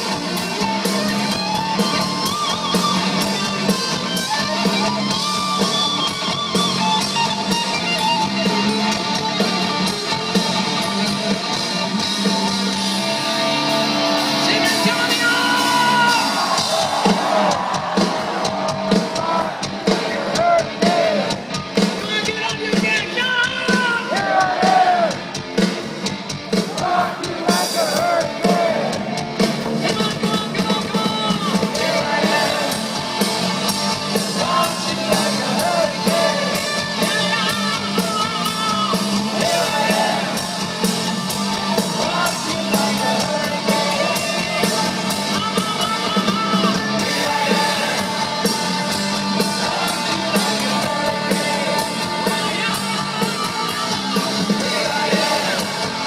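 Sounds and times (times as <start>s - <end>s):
rock music with guitar and drums: 0.0s - 56.0s
person singing and yelling: 34.2s - 40.6s, 41.8s - 56.0s.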